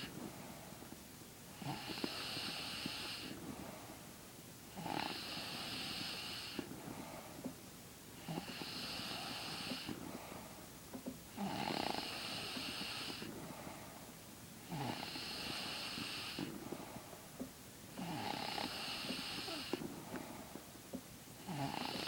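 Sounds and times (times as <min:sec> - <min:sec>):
woman snoring: 0:01.6 - 0:03.4, 0:04.7 - 0:06.6, 0:08.2 - 0:09.9, 0:11.4 - 0:13.3, 0:14.7 - 0:16.5, 0:18.0 - 0:19.8, 0:21.4 - 0:22.0.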